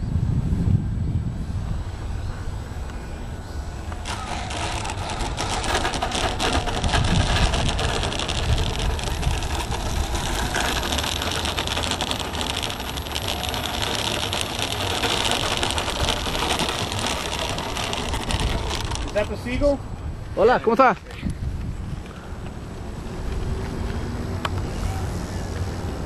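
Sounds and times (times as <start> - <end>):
wind rumbling on microphone: 0.0 - 20.4, 21.1 - 26.0
model aircraft motor buzzing: 4.0 - 19.7.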